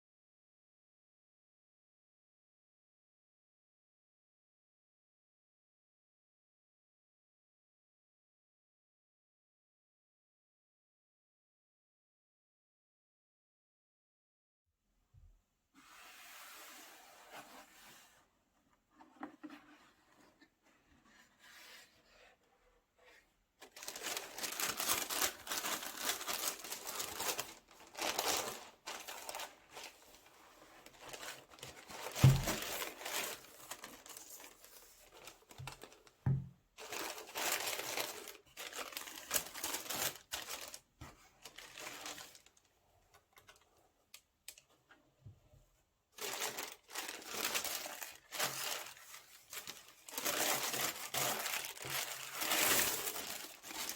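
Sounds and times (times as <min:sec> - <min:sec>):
paper crinkling and rustling: 0:23.0 - 0:43.8, 0:46.2 - 0:53.9.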